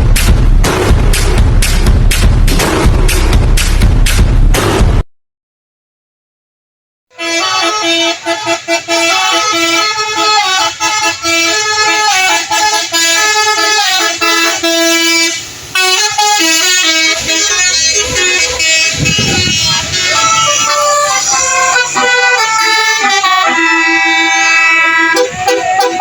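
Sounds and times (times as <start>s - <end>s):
bus horns playing a tune: 7.1s - 26.0s.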